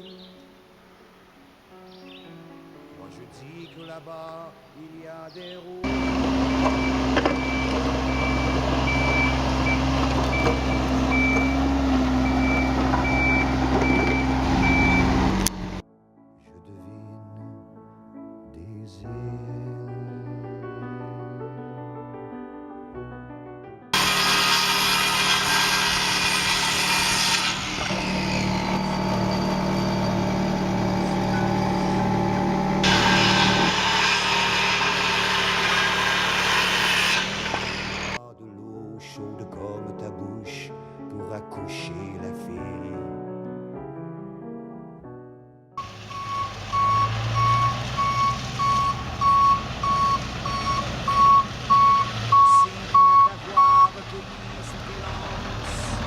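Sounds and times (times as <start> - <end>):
reversing alarm beeping: 5.9 - 15.4, 28.0 - 33.8, 45.8 - 54.0
small engine running: 5.9 - 15.8, 24.0 - 38.2.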